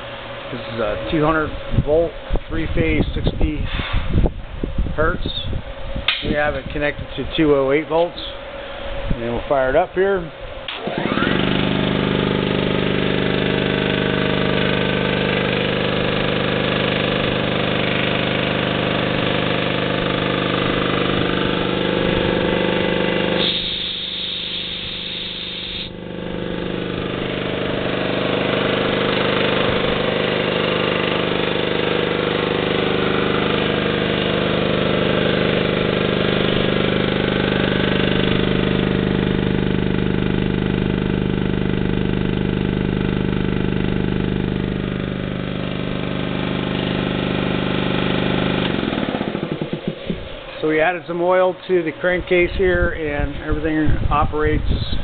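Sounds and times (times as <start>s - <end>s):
air compressor running: 0.0s - 55.0s
high hiss: 23.4s - 26.0s.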